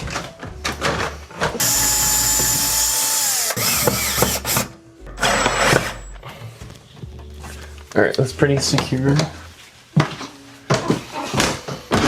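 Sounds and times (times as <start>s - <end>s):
power drill driving a screw: 1.6s - 6.1s.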